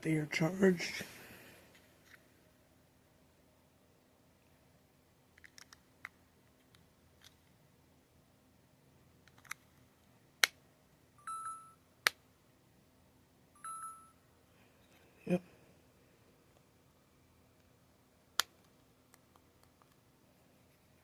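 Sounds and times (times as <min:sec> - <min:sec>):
short electronic chimes: 0:13.6 - 0:14.2.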